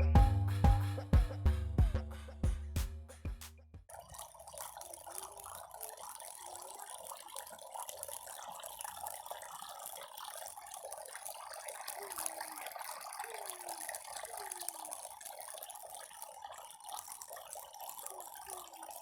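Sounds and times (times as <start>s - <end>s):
water trickling and splashing: 3.8s - 19.0s.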